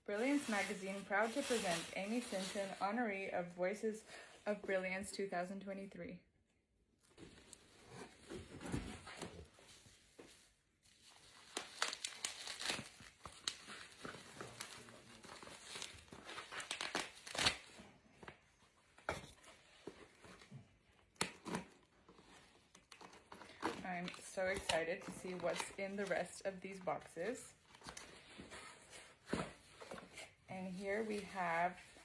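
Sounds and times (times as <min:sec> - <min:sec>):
packaging crinkling and tearing: 0:11.0 - 0:17.8.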